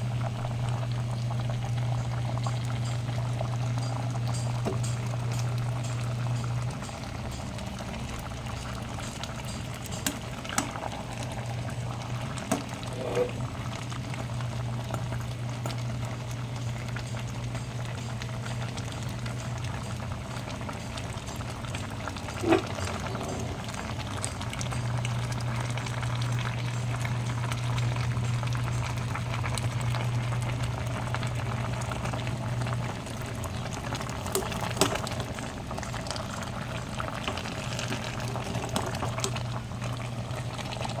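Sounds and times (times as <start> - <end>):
stew bubbling in a pot: 0.0 - 41.0
steady low hum: 14.5 - 40.8.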